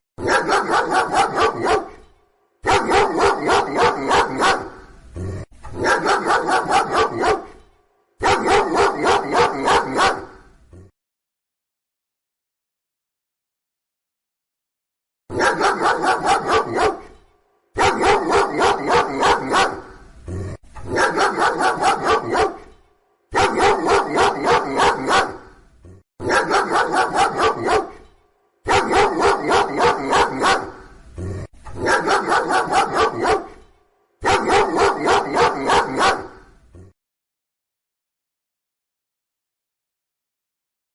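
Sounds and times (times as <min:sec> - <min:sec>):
dog barking: 0:00.2 - 0:04.9, 0:05.8 - 0:10.5, 0:15.3 - 0:17.2, 0:17.8 - 0:20.0, 0:20.9 - 0:25.6, 0:26.2 - 0:30.9, 0:31.8 - 0:36.9.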